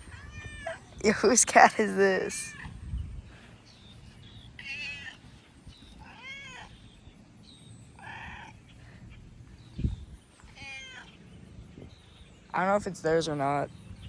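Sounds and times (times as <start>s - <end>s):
cat meowing: 0.0s - 1.0s, 4.6s - 5.2s, 5.9s - 6.8s, 10.5s - 11.1s.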